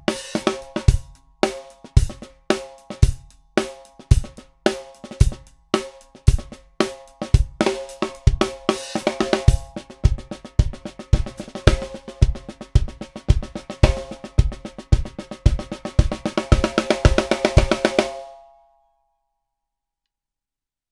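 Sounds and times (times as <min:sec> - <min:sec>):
bass drum beat: 0:00.0 - 0:18.0
ringing snare drum strokes: 0:00.0 - 0:18.4.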